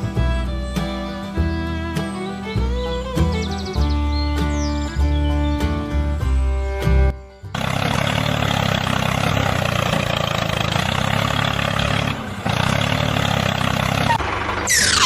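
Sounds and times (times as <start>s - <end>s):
engine running: 0.0s - 15.0s.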